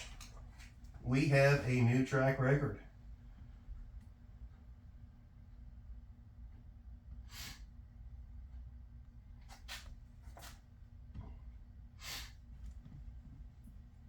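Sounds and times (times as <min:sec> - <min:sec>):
low steady hum: 0:00.0 - 0:14.0
person breathing and sniffing: 0:07.3 - 0:07.7, 0:12.0 - 0:12.4.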